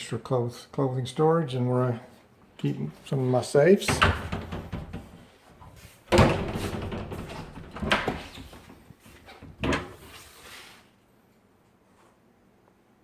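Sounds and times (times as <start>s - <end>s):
closet doors knocking shut: 3.8s - 10.0s.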